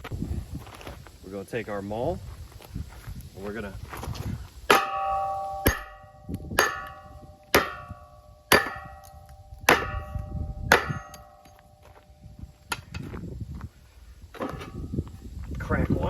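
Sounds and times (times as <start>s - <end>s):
maul striking metal housing: 4.7s - 12.0s
ringing metallic tone: 4.7s - 12.2s.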